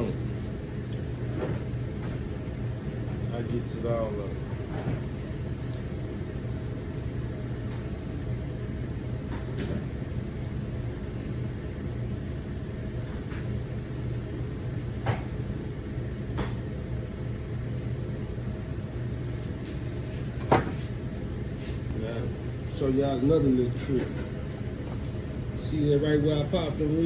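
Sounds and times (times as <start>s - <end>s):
low machine hum: 0.0s - 27.0s.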